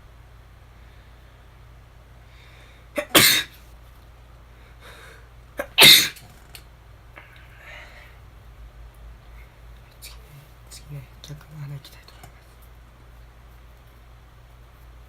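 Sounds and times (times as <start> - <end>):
man sneezing: 3.0 - 3.5, 5.6 - 6.2.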